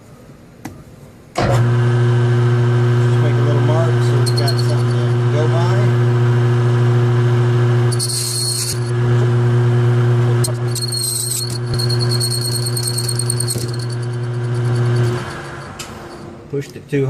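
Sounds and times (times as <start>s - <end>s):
lathe motor humming: 1.4s - 16.4s
high-pitched squealing hiss of cutting: 4.0s - 5.0s, 7.9s - 8.9s.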